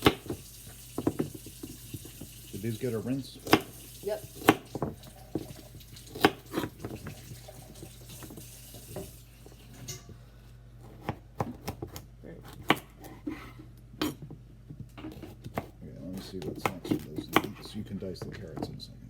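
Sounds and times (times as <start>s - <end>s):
knife chopping on cutting board: 0.0s - 0.4s, 1.0s - 2.2s, 3.4s - 7.2s, 10.8s - 13.4s, 15.0s - 18.3s
tap running into sink: 0.0s - 10.0s.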